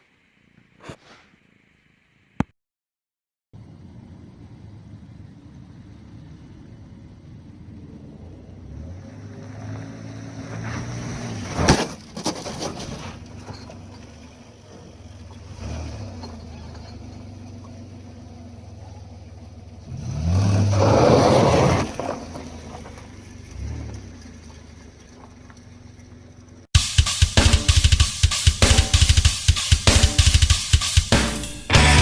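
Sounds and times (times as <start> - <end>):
metal clanks and knocks: 16.0 - 17.9.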